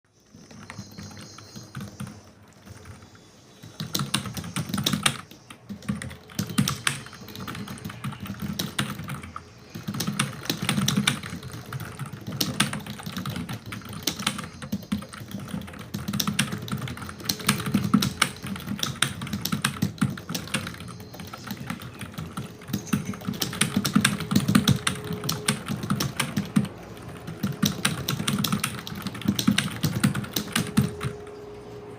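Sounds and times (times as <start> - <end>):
fast typing on keyboard: 0.2 - 31.4.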